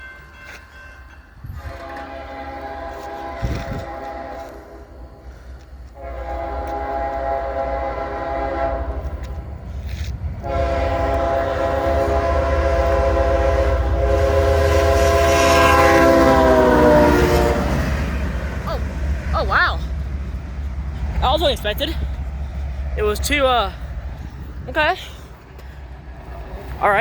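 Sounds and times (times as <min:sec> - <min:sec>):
low rumble of train: 0:00.0 - 0:27.0
locomotive air horn: 0:01.6 - 0:18.1.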